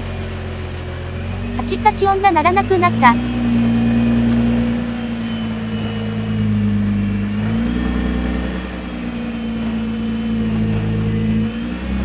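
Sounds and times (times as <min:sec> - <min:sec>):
car engine running at low speed: 0:03.2 - 0:12.0.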